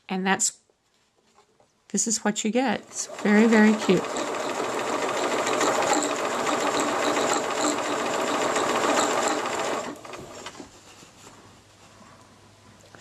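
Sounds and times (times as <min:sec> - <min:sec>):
sewing machine running: 0:02.8 - 0:10.6.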